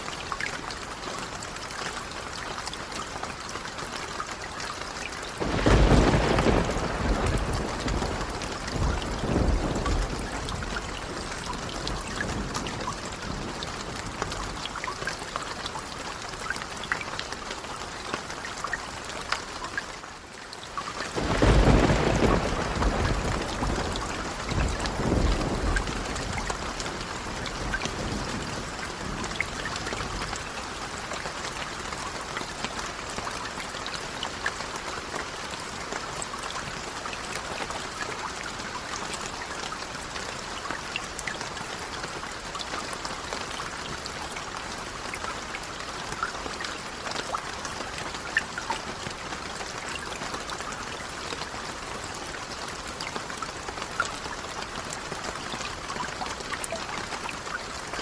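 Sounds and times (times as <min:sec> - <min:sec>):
steady rain: 0:00.0 - 0:58.0
low thunder rumble: 0:05.4 - 0:14.6, 0:21.2 - 0:30.5.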